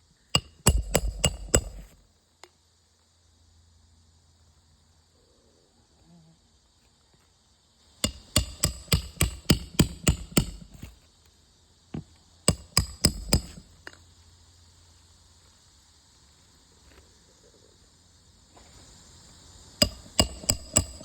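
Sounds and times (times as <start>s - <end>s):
hand hammer striking: 0.4s - 2.0s, 8.0s - 10.9s, 12.5s - 13.6s, 19.8s - 21.0s.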